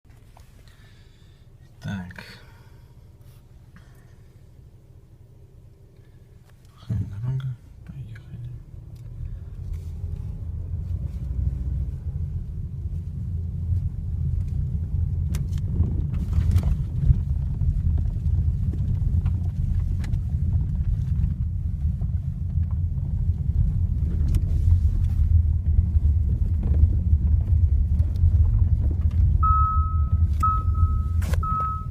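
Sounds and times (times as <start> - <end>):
low road rumble: 0.0 - 31.9
electronic beeping tone: 29.4 - 31.9.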